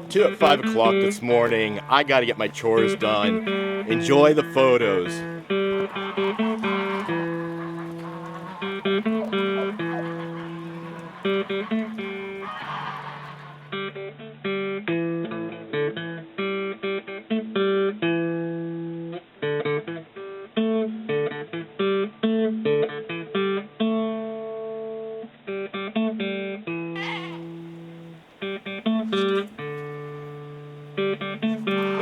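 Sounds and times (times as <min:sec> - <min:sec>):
acoustic guitar plucking: 0:00.0 - 0:19.1.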